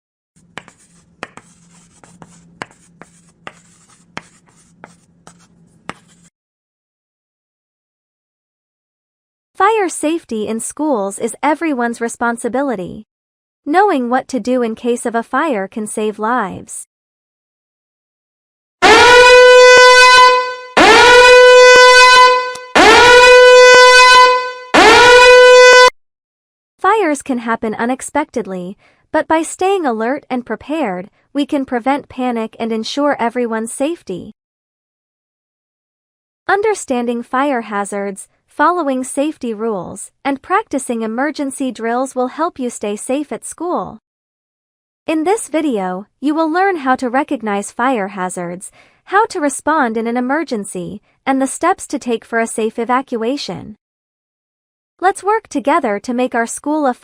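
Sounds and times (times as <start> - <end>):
pen scratching on surface: 0.4 - 6.3
sharp taps: 0.5 - 5.0
fire alarm horn blasts: 18.8 - 25.9.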